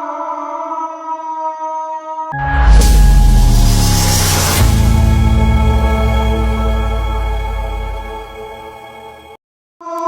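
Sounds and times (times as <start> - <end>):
ambient held chord: 2.3 - 9.2.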